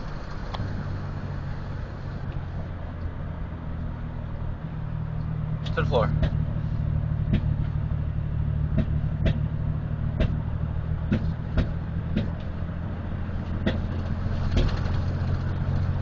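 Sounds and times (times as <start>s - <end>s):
engine droning at full throttle: 0.0s - 16.0s
engine misfire pops: 5.6s - 6.5s, 7.2s - 7.8s, 8.7s - 9.5s, 10.1s - 10.4s, 11.0s - 12.6s, 13.4s - 15.9s.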